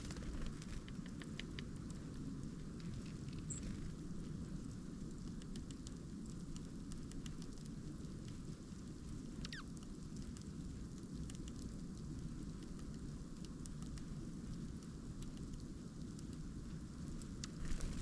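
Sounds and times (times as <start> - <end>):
light ticks: 0.0 - 18.0
bird chirping: 9.4 - 9.6.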